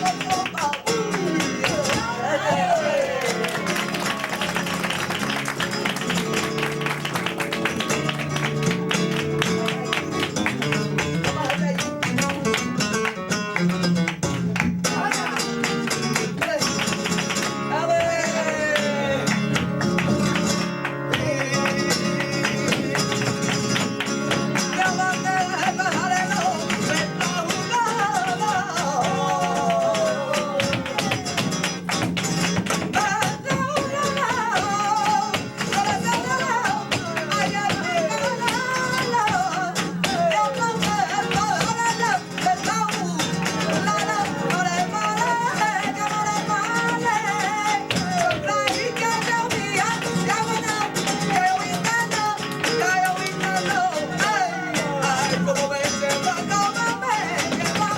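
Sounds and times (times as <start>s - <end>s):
person singing: 0.0s - 3.8s, 17.7s - 19.8s, 21.0s - 31.6s, 32.8s - 57.9s
flamenco guitar: 0.0s - 57.9s.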